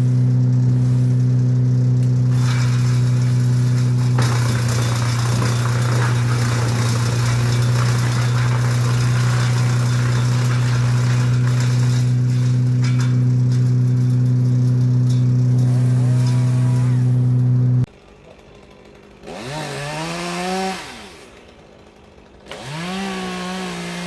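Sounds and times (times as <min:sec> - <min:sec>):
rough rushing crackling noise: 0:00.0 - 0:17.9
engine running steadily: 0:00.0 - 0:19.8.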